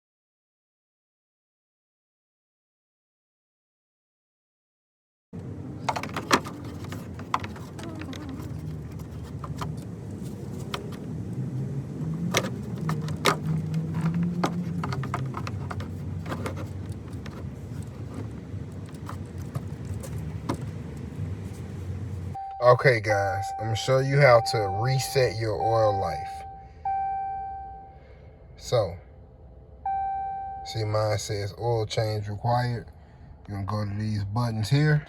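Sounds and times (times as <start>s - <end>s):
diesel engine idling: 5.4s - 35.0s
clicks and handling knocks: 5.8s - 11.1s, 12.1s - 21.7s.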